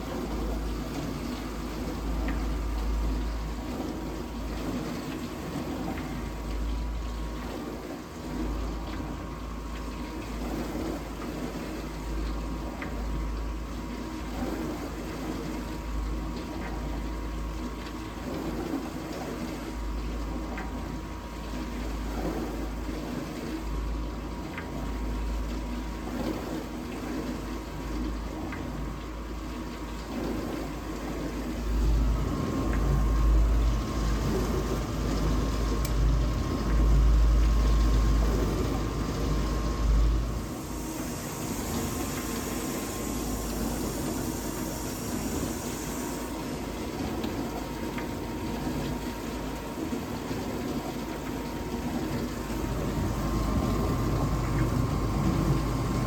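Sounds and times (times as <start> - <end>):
dishwasher pump running: 0.0 - 56.0
water churning and spraying: 17.7 - 56.0.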